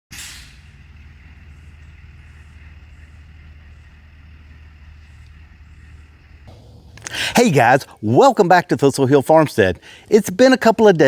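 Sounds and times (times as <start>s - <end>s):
engine running: 0.2s - 8.4s.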